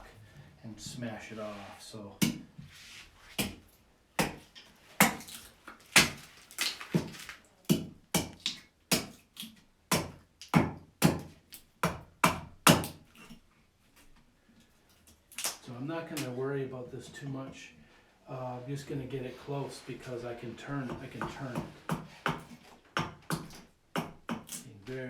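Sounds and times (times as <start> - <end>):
axe chopping wood: 3.4 - 3.6, 4.2 - 13.0, 20.9 - 24.6.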